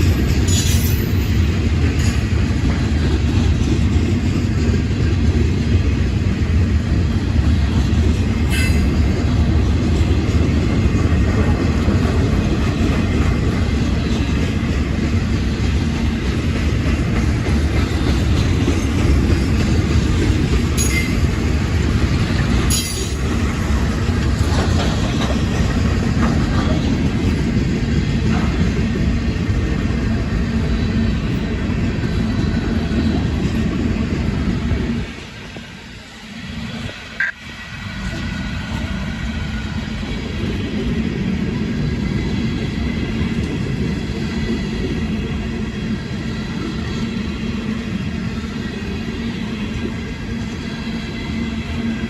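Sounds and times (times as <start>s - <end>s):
freight train rumbling past: 0.0s - 52.0s.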